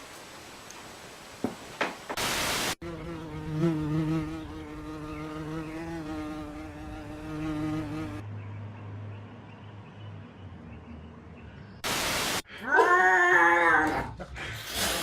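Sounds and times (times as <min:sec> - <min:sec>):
pitched buzz: 0:02.8 - 0:08.2
burst of hiss: 0:14.6 - 0:15.0.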